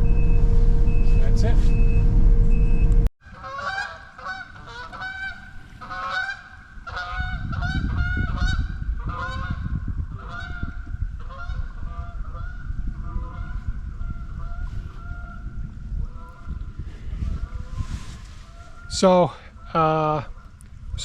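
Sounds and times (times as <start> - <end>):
machine running: 0.0 - 3.1
geese honking: 3.3 - 9.6.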